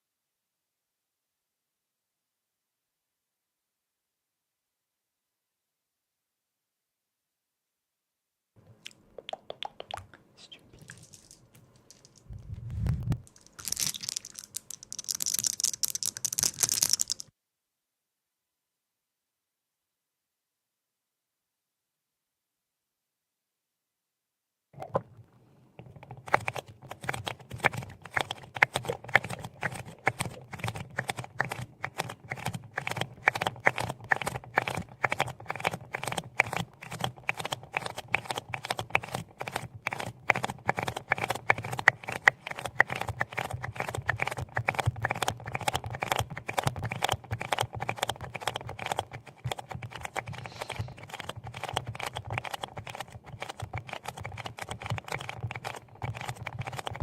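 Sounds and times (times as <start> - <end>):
rapid tapping on hard object: 26.0 - 57.0.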